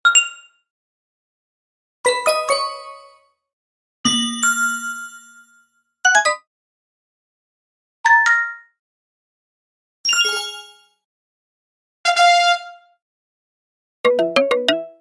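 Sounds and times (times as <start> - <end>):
bright notification chimes: 14.1 - 15.0.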